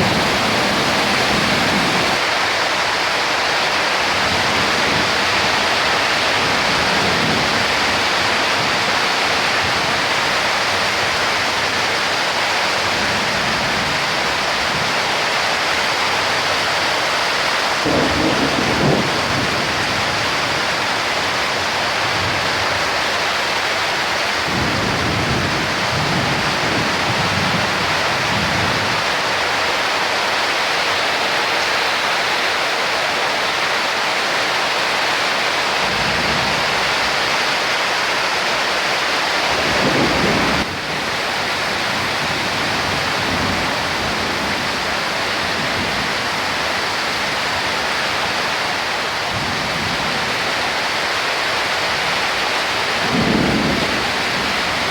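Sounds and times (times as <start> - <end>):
thunder rolling: 0.0 - 2.4, 17.8 - 23.0, 24.4 - 29.2, 39.4 - 47.4, 51.7 - 54.9
heavy rain falling: 0.0 - 54.9.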